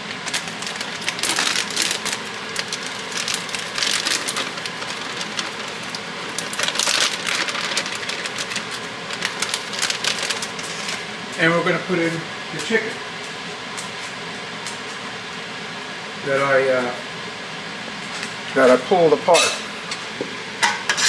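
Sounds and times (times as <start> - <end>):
vegetables pouring into broth: 0.0 - 11.0.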